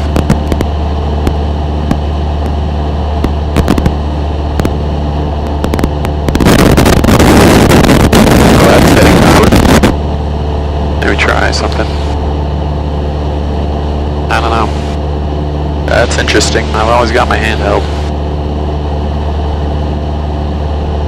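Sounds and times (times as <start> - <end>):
static clicks crackling: 0.0 - 2.6, 3.2 - 4.8, 5.4 - 10.0
aircraft engine droning: 0.0 - 21.0
static hiss rush: 3.2 - 4.8, 5.4 - 10.0, 14.3 - 15.0, 15.8 - 18.2.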